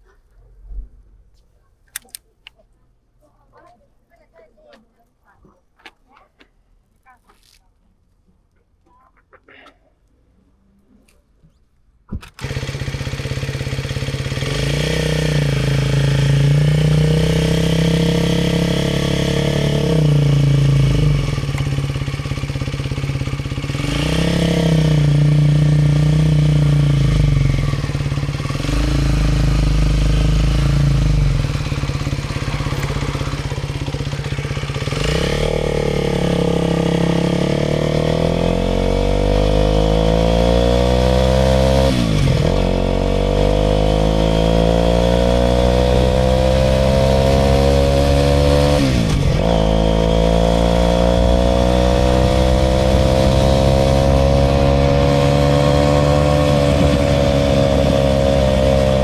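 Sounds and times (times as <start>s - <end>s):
motorcycle engine accelerating: 12.2s - 59.0s.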